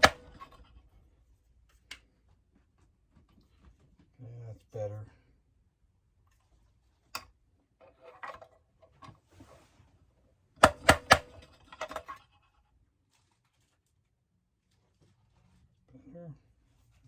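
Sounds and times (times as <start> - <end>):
small metal tools clicking and scraping: 11.3 - 12.5.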